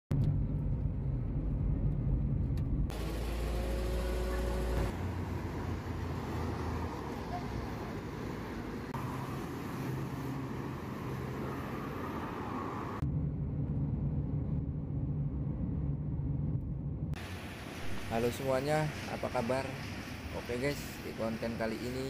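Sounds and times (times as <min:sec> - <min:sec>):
vehicle engine running: 0:00.1 - 0:06.2
road and traffic noise: 0:00.1 - 0:16.2, 0:17.0 - 0:22.0.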